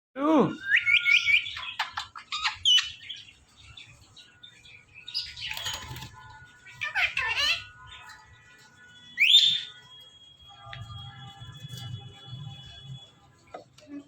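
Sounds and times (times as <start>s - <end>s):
parrot chirping and calling: 0.5s - 10.3s.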